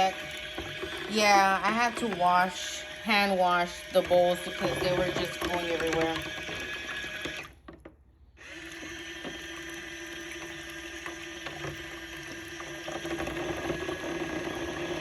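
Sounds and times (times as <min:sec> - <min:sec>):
water churning: 0:00.0 - 0:06.8
small motor humming: 0:00.0 - 0:07.6, 0:08.4 - 0:15.0.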